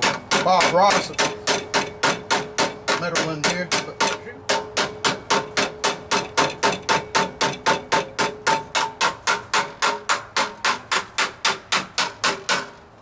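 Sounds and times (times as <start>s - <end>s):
hammer striking sheet metal: 0.0s - 12.7s.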